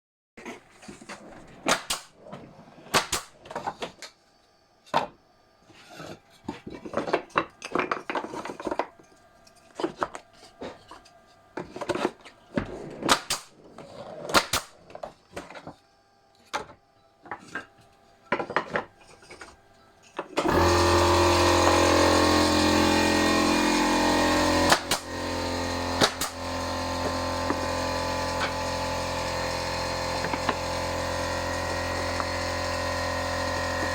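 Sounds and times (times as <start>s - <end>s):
machine hum: 20.4s - 33.9s.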